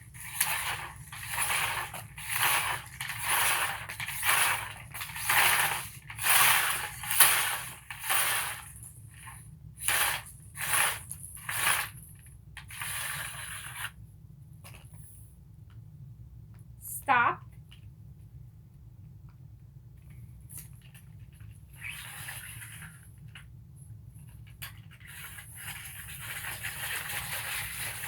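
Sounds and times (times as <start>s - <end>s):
tape measure rasping strokes: 0.2s - 12.0s, 12.6s - 14.0s.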